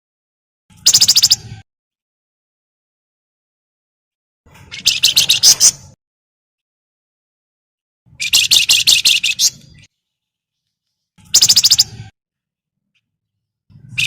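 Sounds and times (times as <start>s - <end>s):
bird chattering call: 0.8s - 1.4s, 11.3s - 12.1s.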